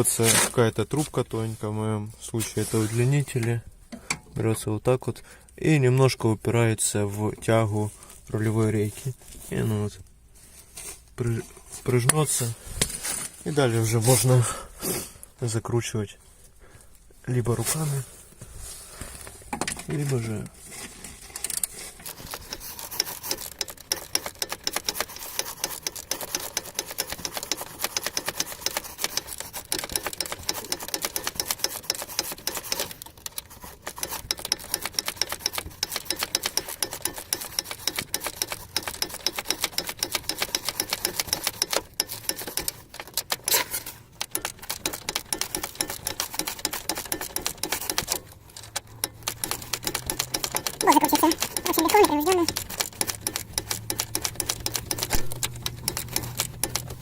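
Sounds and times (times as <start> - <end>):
ratchet wrench clicking: 21.4 - 57.0.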